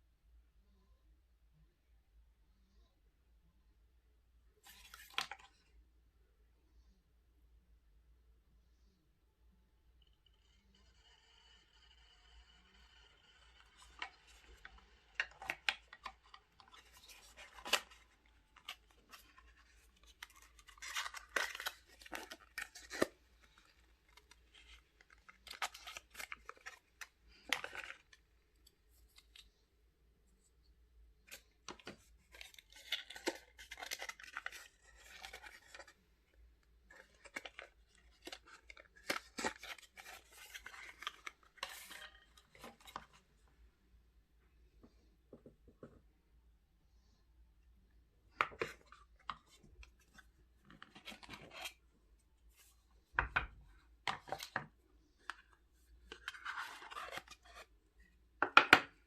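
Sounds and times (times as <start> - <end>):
packaging rustling and scraping: 10.9 - 29.4, 31.3 - 36.0, 36.9 - 43.2, 56.0 - 57.7.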